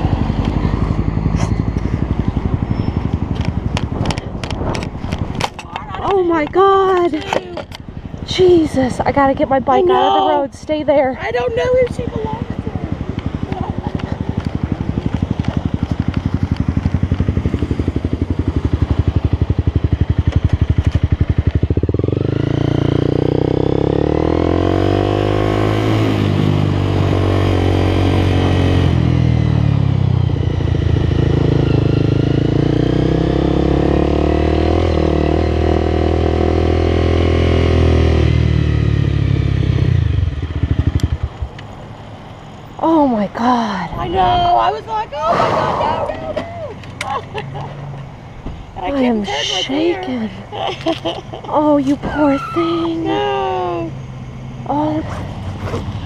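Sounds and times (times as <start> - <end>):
motorcycle engine revving: 0.0 - 5.5, 7.6 - 41.8.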